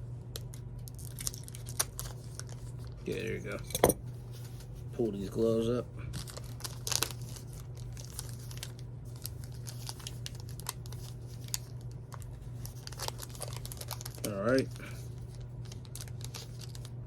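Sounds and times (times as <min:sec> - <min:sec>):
card wrapper crinkling and tearing: 0:00.3 - 0:03.3, 0:06.1 - 0:17.0.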